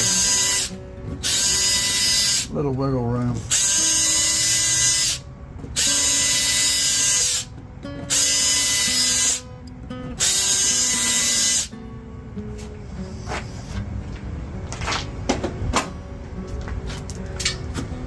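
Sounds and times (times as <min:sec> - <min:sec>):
power drill motor whine: 0:00.0 - 0:02.5, 0:03.5 - 0:05.2, 0:05.8 - 0:07.5, 0:10.2 - 0:11.7
background music: 0:00.0 - 0:18.0.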